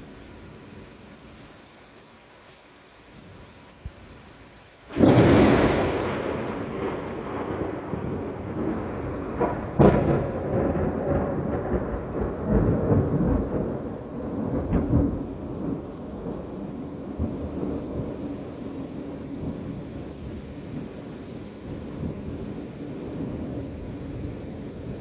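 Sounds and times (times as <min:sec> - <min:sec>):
steady rain: 0:00.0 - 0:25.0
thunder crack and rumble: 0:04.9 - 0:21.0.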